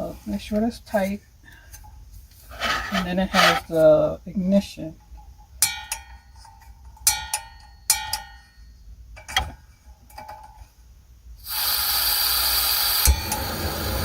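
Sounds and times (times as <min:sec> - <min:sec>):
burning gas hissing: 0:02.5 - 0:03.8, 0:11.4 - 0:14.0.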